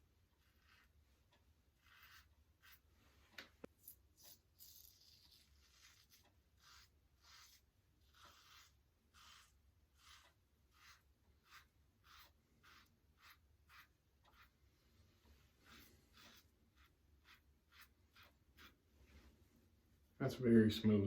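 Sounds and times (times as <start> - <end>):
razor scraping stubble: 0.4 - 1.0, 1.7 - 2.9, 3.8 - 14.6, 15.4 - 18.8.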